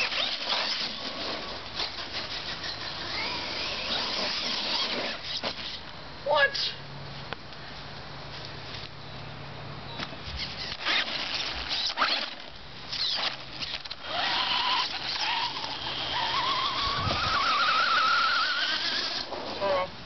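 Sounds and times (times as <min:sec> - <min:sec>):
electric motor whining: 0:00.0 - 0:05.8, 0:10.4 - 0:19.9
rough tyre noise: 0:00.0 - 0:05.9, 0:10.1 - 0:19.8
clicks and short squeaks: 0:10.0 - 0:12.3.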